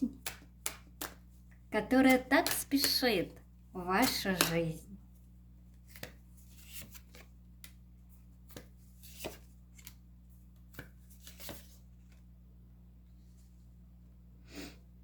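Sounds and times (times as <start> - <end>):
cards shuffled on a table: 5.7 - 7.8, 8.4 - 10.0, 10.6 - 12.2.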